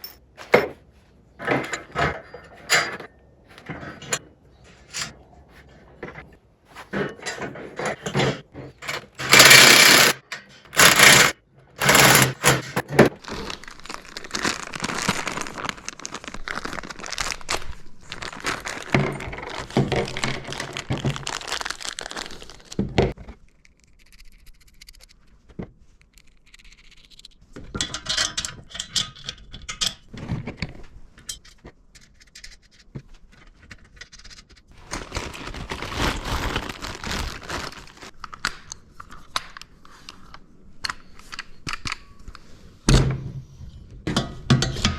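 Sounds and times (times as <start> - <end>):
metal parts clinking and scraping: 0.0 - 6.2, 6.9 - 13.1, 26.3 - 30.1.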